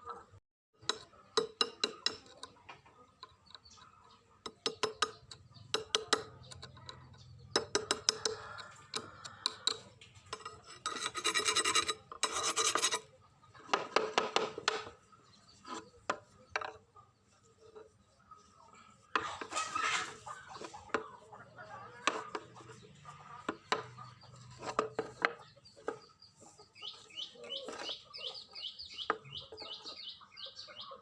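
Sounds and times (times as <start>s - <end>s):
hand file rasping: 4.6s - 14.9s, 15.5s - 16.8s, 22.0s - 28.4s.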